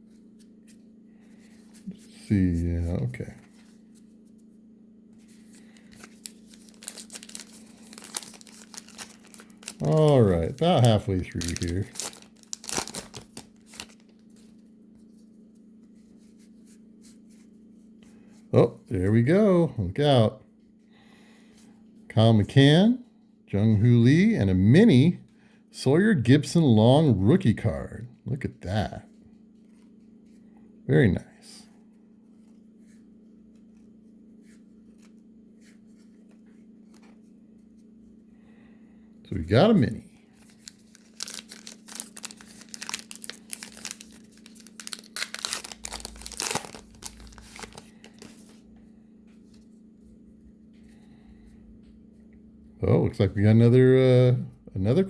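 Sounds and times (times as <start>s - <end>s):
faint steady hum: 0.0s - 55.0s
trading cards snapping and rustling: 5.6s - 14.1s, 40.4s - 48.6s.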